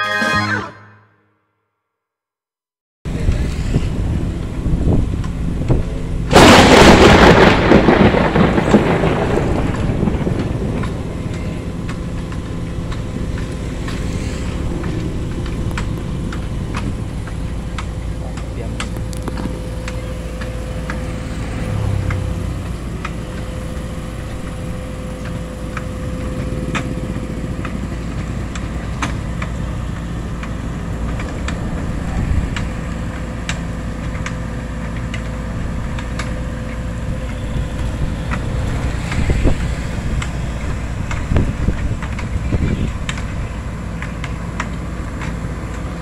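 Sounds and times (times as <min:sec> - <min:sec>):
excavator engine droning: 0:03.1 - 0:46.0
sharp clicks and knocks: 0:09.7 - 0:24.6.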